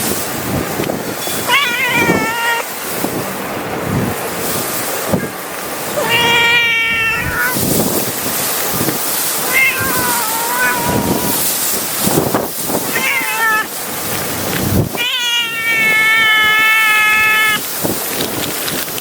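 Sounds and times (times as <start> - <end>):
wind buffeting microphone: 0.0 - 19.0
cat meowing: 1.4 - 2.7, 6.0 - 7.6, 9.4 - 11.7, 12.8 - 13.8, 14.9 - 17.7.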